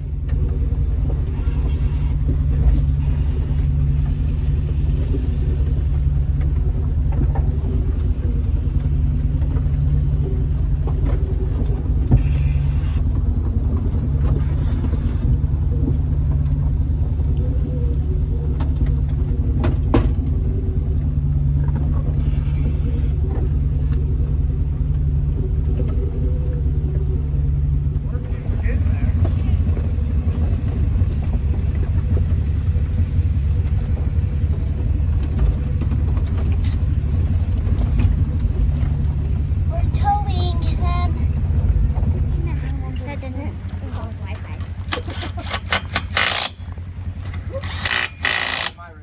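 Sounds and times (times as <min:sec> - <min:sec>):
engine low rumble: 0:00.0 - 0:49.0
sharp clicks: 0:44.8 - 0:48.8.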